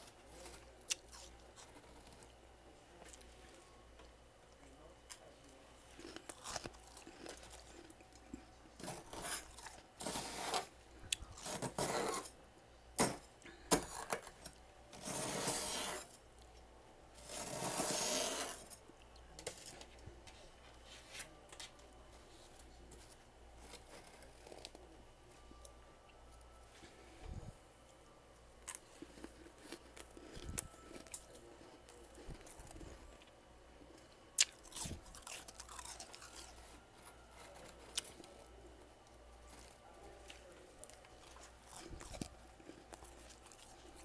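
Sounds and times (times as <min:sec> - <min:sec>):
crunching frost: 0:34.4 - 0:38.7.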